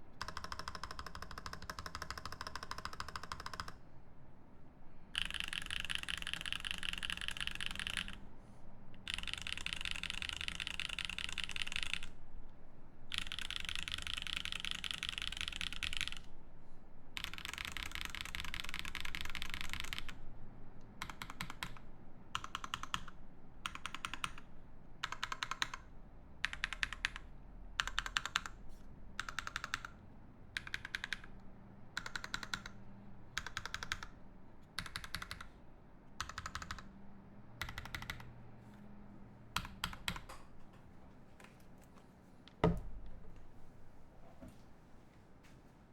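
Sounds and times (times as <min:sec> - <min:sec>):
mechanical keyboard typing: 0:00.2 - 0:03.8, 0:05.2 - 0:08.2, 0:09.0 - 0:12.2, 0:13.1 - 0:16.3, 0:17.2 - 0:20.2, 0:20.8 - 0:28.6, 0:29.2 - 0:34.2, 0:34.8 - 0:35.6, 0:36.2 - 0:37.0, 0:37.6 - 0:38.4, 0:39.6 - 0:40.5.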